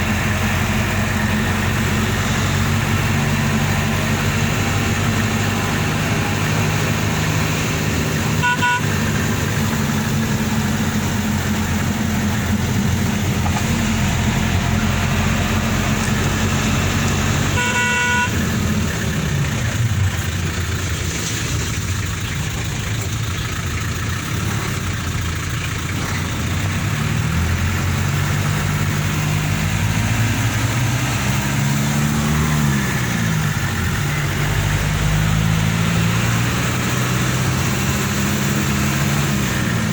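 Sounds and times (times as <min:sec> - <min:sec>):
off-road vehicle engine running: 0:00.0 - 0:39.9
vehicle horn tooting: 0:08.2 - 0:09.2, 0:17.4 - 0:18.5.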